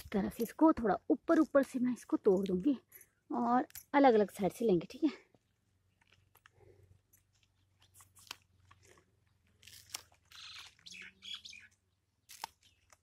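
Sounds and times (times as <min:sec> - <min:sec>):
onion leaves snapping and rustling: 0:07.3 - 0:11.1, 0:12.2 - 0:13.0.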